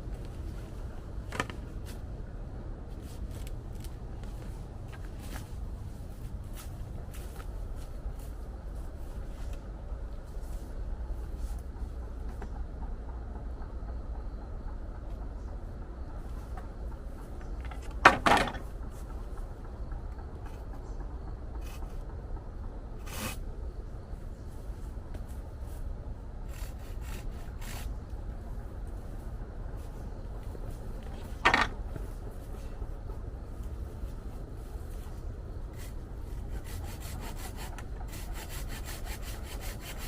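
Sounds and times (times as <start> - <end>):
low steady rumble: 0.0 - 40.0
light handling clicks and knocks: 14.7 - 22.8.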